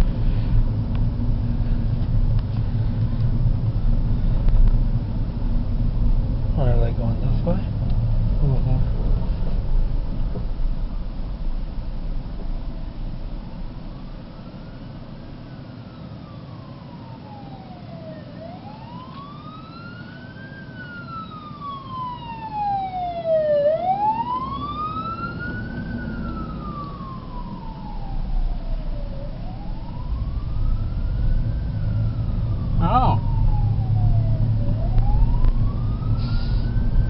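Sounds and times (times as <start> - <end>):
car road noise: 0.0 - 37.0
fire truck siren wailing: 12.2 - 37.0.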